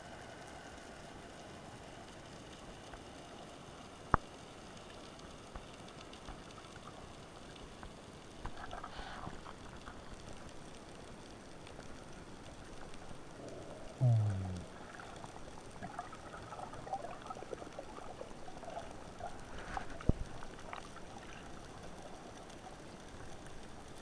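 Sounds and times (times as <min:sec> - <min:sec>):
faint crackling: 0:03.9 - 0:24.0
underwater hiss: 0:08.6 - 0:09.8.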